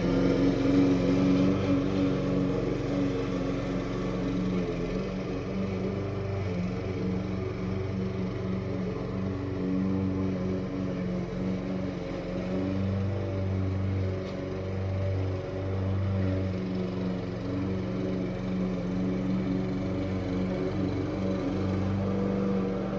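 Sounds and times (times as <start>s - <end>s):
small gasoline engine running: 0.0s - 22.9s.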